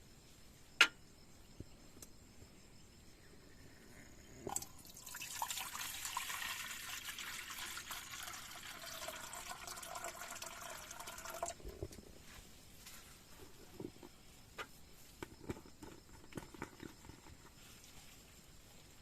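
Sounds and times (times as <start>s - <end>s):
water pouring into container: 4.5s - 11.7s.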